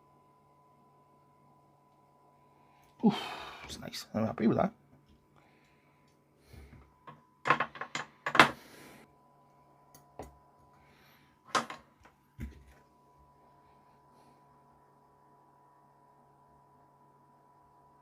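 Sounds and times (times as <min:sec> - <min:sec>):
faint electrical hum: 0:00.0 - 0:18.0
small objects clicking and tapping: 0:07.0 - 0:08.5.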